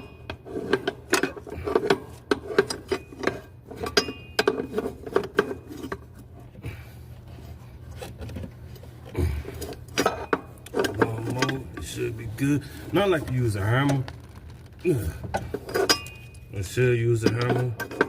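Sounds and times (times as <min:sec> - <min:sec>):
metal tools clinking: 0:15.3 - 0:18.0.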